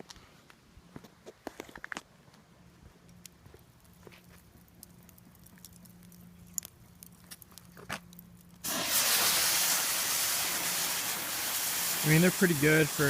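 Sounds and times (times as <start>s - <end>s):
smoke grenade hissing: 8.6s - 13.0s.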